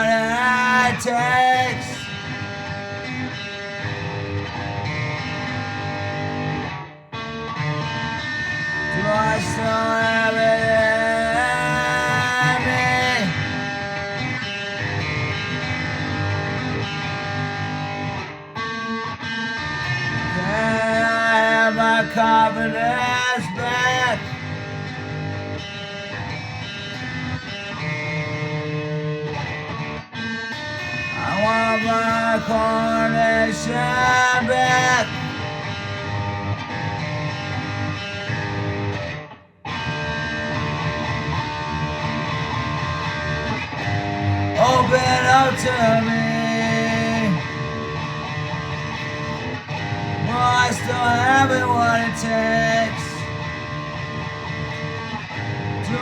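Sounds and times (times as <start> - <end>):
person singing: 0.0 - 2.2, 8.9 - 13.4, 20.3 - 24.4, 31.2 - 35.4, 44.6 - 47.6, 50.2 - 53.3
distorted electric guitar chords: 0.0 - 56.0.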